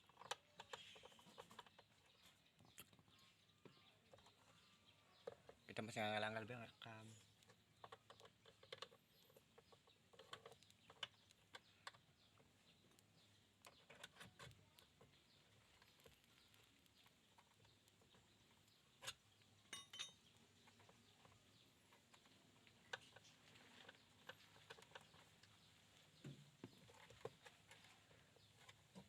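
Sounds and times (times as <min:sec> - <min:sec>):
faint clicks and taps: 0:00.0 - 0:29.0.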